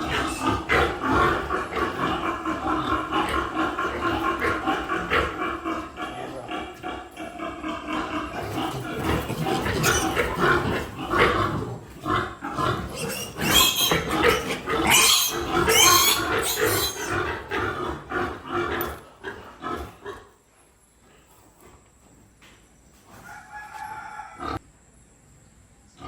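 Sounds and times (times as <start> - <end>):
piglets squealing: 0.0 - 11.4, 12.3 - 18.9
pig grunts: 0.0 - 20.4, 24.3 - 24.6.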